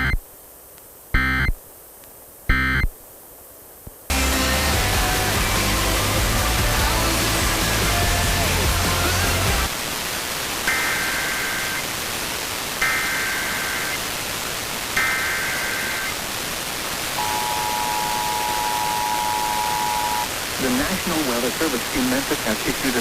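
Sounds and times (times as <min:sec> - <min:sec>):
steady dual tone alert signal: 0:00.0 - 0:00.2, 0:01.2 - 0:01.6, 0:02.5 - 0:02.9, 0:17.2 - 0:20.3
radio hiss: 0:00.0 - 0:03.0, 0:03.8 - 0:23.0
music: 0:04.1 - 0:09.7
warbling digital data chirp: 0:12.8 - 0:14.0, 0:15.0 - 0:16.2, 0:17.2 - 0:20.3.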